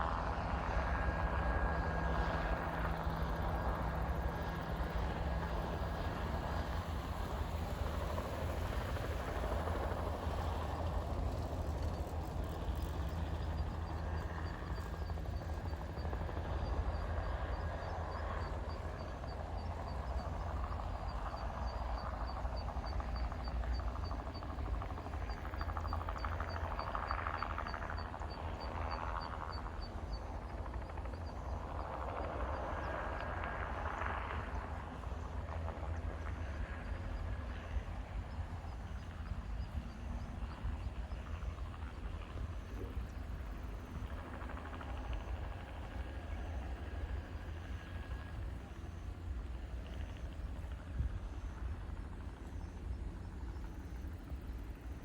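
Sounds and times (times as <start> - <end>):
helicopter engine and rotors droning: 0.0 - 55.0.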